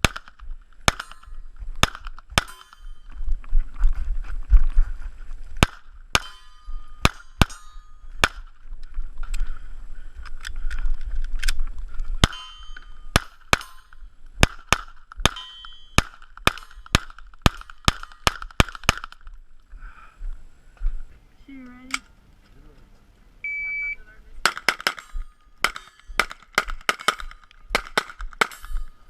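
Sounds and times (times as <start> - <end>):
gunshots: 0.0 - 1.2, 8.2 - 8.5, 13.1 - 19.2, 24.4 - 28.8.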